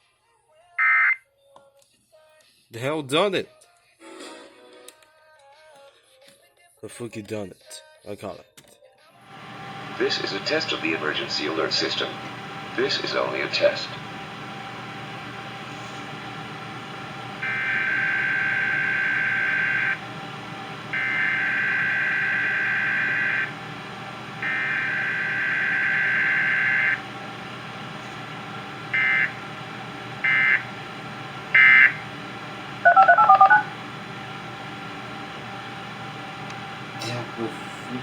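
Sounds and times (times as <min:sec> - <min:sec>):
screeching digital data bursts: 0:30.3 - 0:30.6, 0:31.6 - 0:32.0, 0:32.8 - 0:33.7
touch-tone beeps: 0:32.8 - 0:33.7.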